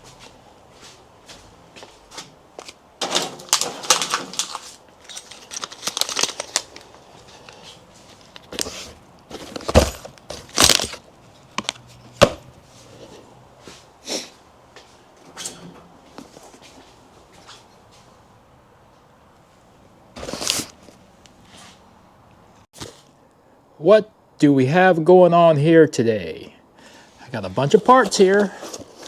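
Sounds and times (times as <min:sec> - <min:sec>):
rustling and handling noises: 0:00.0 - 0:18.3, 0:19.4 - 0:22.0, 0:22.7 - 0:23.2, 0:27.6 - 0:29.0.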